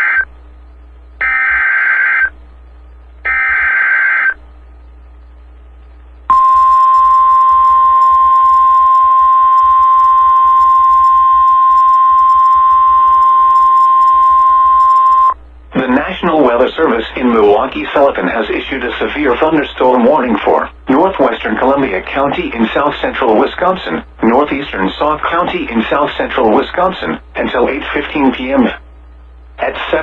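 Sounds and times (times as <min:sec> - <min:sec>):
steady warning alarm tone: 0:01.2 - 0:02.3, 0:03.3 - 0:04.4, 0:06.3 - 0:15.4.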